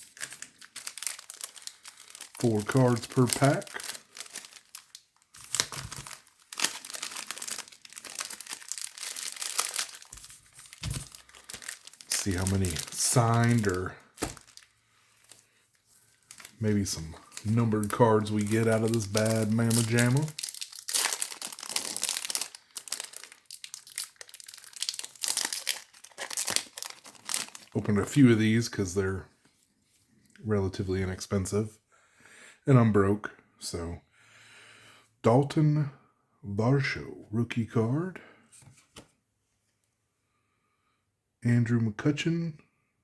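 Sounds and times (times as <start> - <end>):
card pack wrapper crinkling and tearing: 0.0 - 15.4, 16.0 - 28.6.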